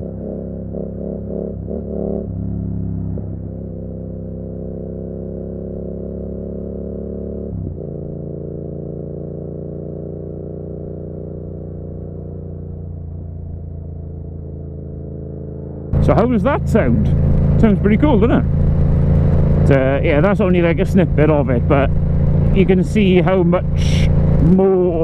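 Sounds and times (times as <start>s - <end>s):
motorcycle engine while riding: 0.0s - 25.0s.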